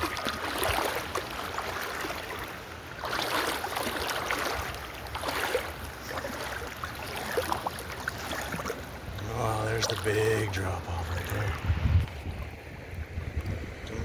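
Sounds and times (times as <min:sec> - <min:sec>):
river water splashing: 0:00.0 - 0:14.0.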